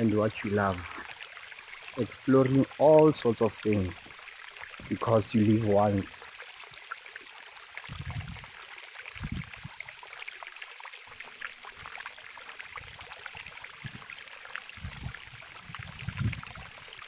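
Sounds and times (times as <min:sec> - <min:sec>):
water trickling in a stream: 0:00.0 - 0:17.0.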